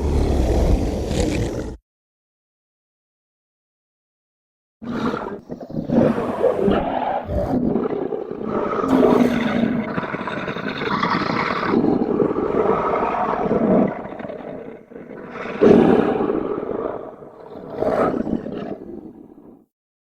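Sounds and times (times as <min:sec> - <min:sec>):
monster roar: 0:00.0 - 0:01.8, 0:08.8 - 0:10.5.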